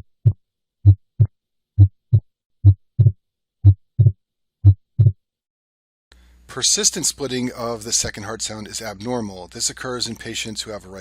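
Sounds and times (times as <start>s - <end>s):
heartbeat: 0.0s - 5.2s.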